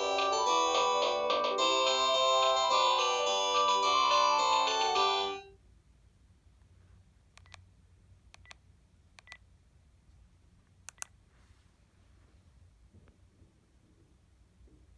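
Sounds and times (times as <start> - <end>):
phone ringtone melody: 0.0 - 5.5.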